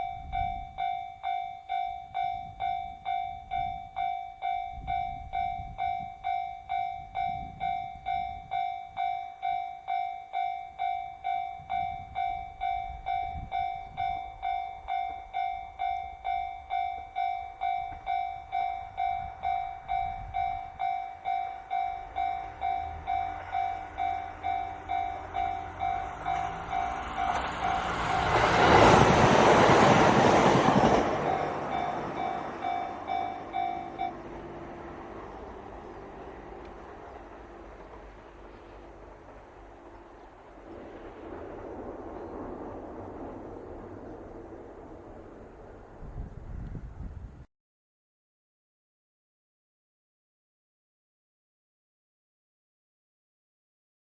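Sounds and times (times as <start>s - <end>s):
diesel train passing: 0.0s - 47.0s
level crossing bell ringing: 31.2s - 34.3s.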